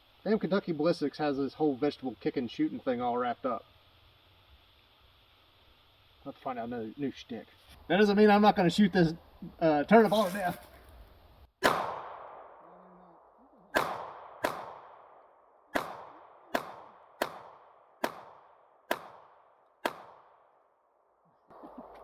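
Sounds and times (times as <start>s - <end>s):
pistol shots with echo: 11.6s - 12.7s, 13.7s - 20.5s.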